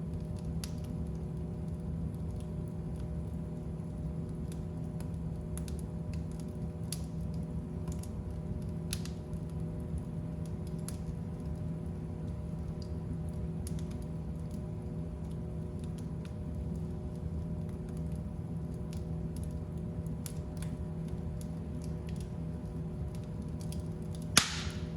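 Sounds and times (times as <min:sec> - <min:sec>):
fire crackling and popping: 0:00.0 - 0:24.9
fire rumbling: 0:00.0 - 0:24.9.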